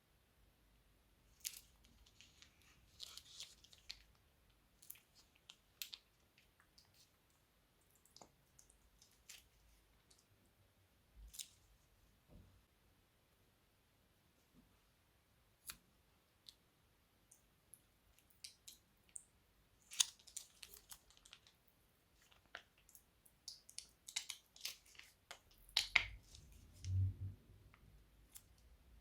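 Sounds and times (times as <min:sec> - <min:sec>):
crunchy slime crackling: 0:01.3 - 0:07.2, 0:19.8 - 0:27.1.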